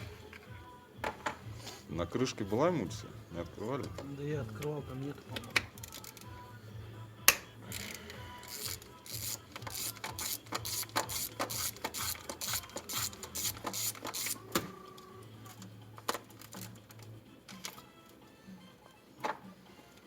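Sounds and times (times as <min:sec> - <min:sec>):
metallic clicks of hand tools: 0:07.3 - 0:14.7.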